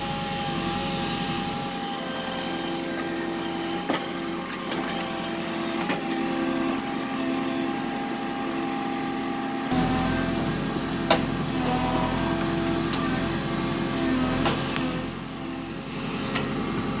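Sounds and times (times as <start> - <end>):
backhoe diesel engine running: 0.0 - 17.0.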